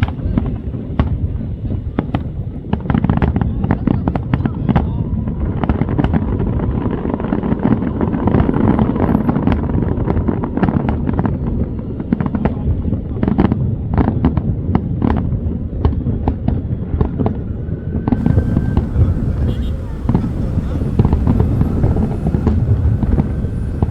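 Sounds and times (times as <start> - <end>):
fireworks bangs and crackles: 0.0 - 23.9
continuous low rumble: 13.8 - 23.9.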